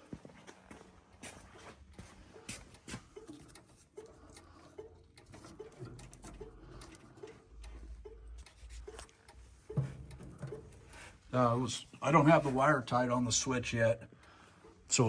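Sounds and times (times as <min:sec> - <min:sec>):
turn signal clicking: 0:03.1 - 0:11.0
faint knocks: 0:09.7 - 0:10.8.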